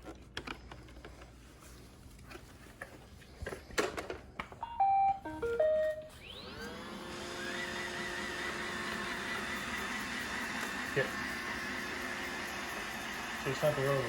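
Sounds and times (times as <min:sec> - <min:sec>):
electronic beep melody: 0:04.6 - 0:06.2
vacuum motor whine: 0:04.8 - 0:14.0.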